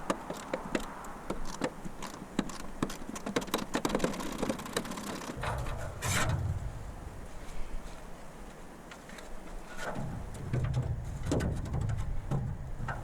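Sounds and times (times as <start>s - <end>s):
scraping rush: 5.0s - 8.4s.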